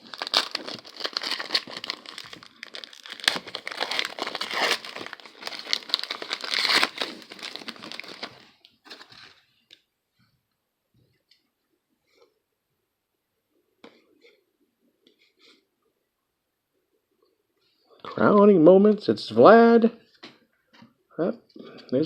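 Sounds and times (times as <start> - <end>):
wrapper being torn open: 0.0 - 9.3
card pack wrapper crinkling: 0.0 - 9.4.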